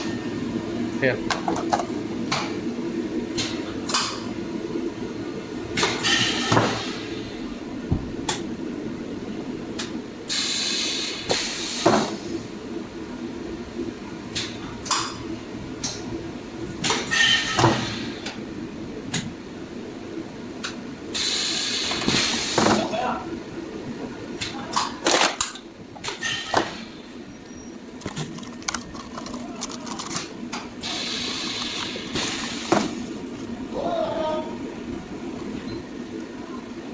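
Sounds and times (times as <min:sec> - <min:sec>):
steady machine hum: 0:00.0 - 0:36.9
air hissing: 0:10.3 - 0:12.3, 0:21.2 - 0:22.8, 0:30.8 - 0:33.2.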